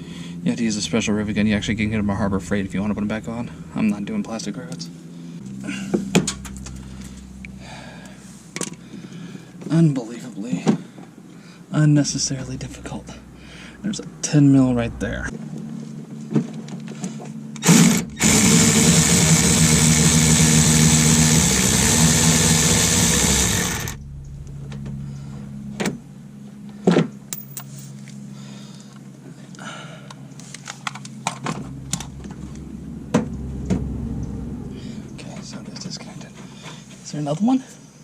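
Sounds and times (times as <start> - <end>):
power tool whirring: 17.6 - 24.0.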